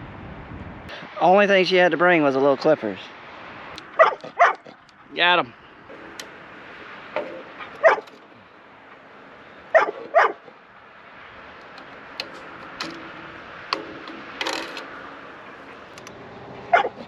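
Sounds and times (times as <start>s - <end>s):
dog barking: 4.0s - 4.8s, 7.8s - 8.1s, 9.7s - 10.5s, 16.7s - 17.0s.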